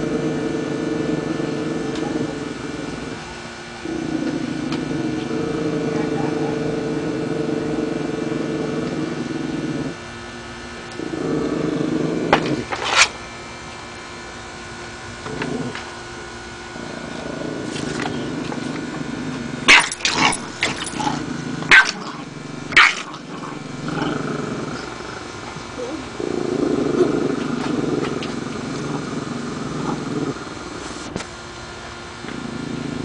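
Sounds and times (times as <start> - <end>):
dogs growling: 0.0 - 10.2, 10.8 - 13.1, 15.2 - 16.1, 16.7 - 31.1, 32.2 - 33.0
dogs barking sharply: 19.7 - 21.0, 21.7 - 23.6.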